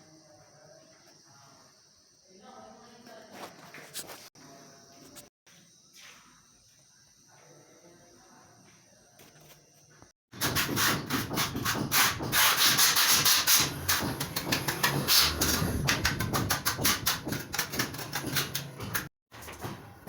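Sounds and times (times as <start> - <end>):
tool scraping wet mortar: 10.4 - 19.8.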